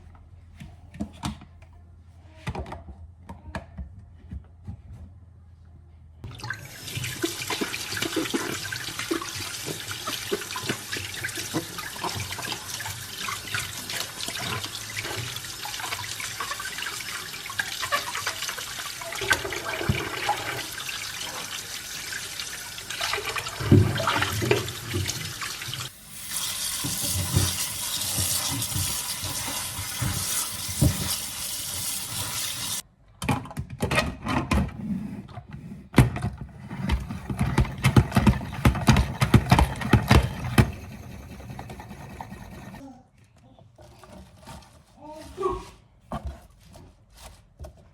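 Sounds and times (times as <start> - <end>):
tap water running into sink: 6.3 - 32.8, 36.9 - 42.8.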